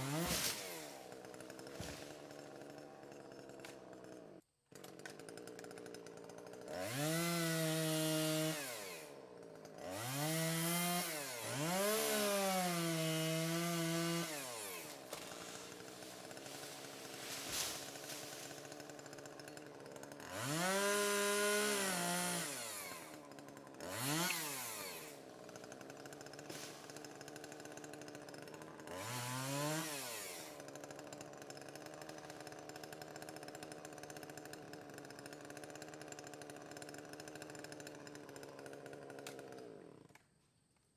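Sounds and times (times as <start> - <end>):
chainsaw idling and revving: 0.0 - 40.9.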